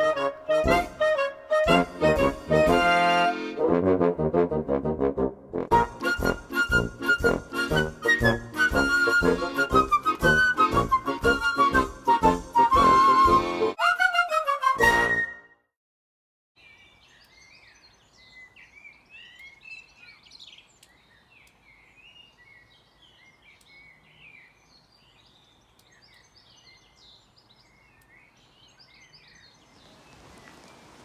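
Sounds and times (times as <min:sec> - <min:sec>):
small birds chirping: 0:16.6 - 0:31.0.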